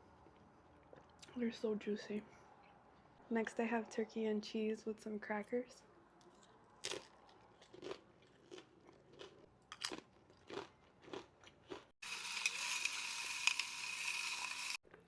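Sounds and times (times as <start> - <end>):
crackers crunching when chewed: 6.2 - 14.3.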